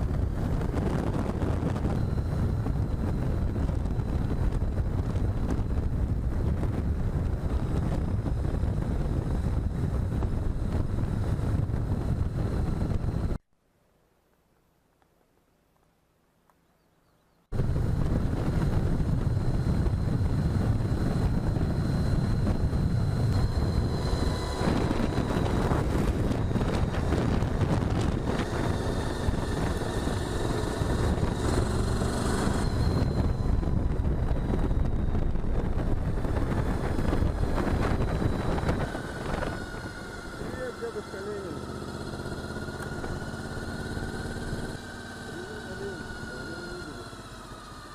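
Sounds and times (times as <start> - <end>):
motorcycle engine and road noise: 0.0 - 13.4, 17.4 - 47.9
wind rush on microphone: 0.0 - 13.4, 17.5 - 47.9
faint high whine: 0.0 - 47.9.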